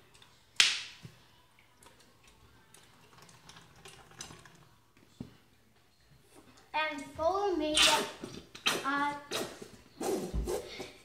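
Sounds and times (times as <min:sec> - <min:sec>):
squeezed bottle squirt: 0:07.8 - 0:10.6.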